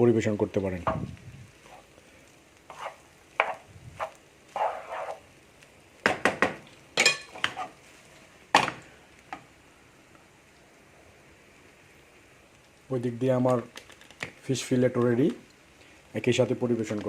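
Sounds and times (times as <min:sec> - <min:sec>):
utensil scraping a pan: 0:01.6 - 0:01.9, 0:02.6 - 0:05.3, 0:07.0 - 0:08.0
utensils clinking on dishes: 0:07.0 - 0:07.5.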